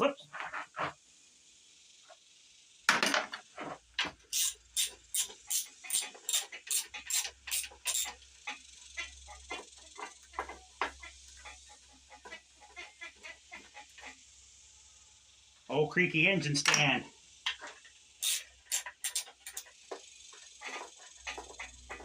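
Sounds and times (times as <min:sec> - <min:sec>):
ratchet wrench clicking: 0:04.3 - 0:08.2, 0:18.2 - 0:19.8.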